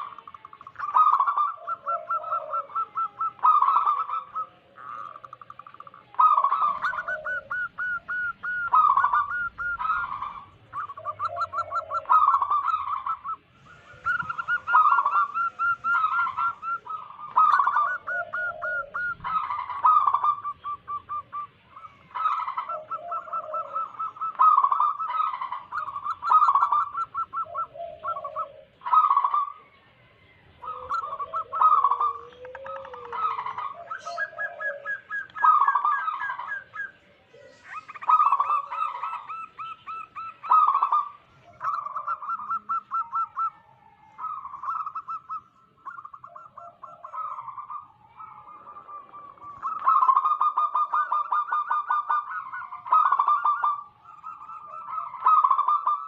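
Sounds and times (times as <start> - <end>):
doves cooing: 0.0 - 56.0.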